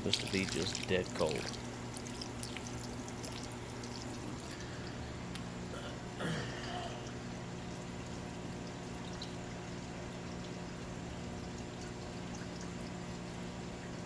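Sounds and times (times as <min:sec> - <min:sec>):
coolant running onto steel shaft: 0:00.0 - 0:05.4
low machine hum: 0:00.0 - 0:14.0.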